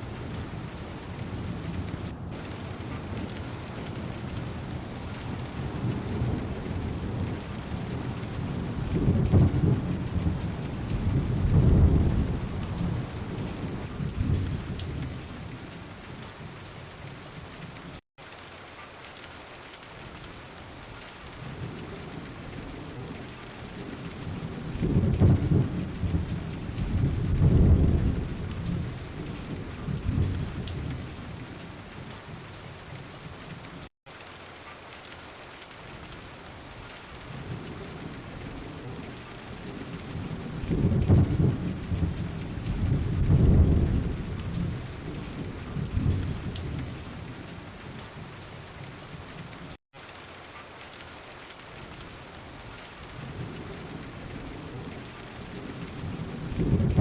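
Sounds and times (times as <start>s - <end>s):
rolling thunder: 0.0s - 17.8s, 21.4s - 33.6s, 37.2s - 47.5s, 53.1s - 57.0s
heavy rain on car window: 0.0s - 57.0s.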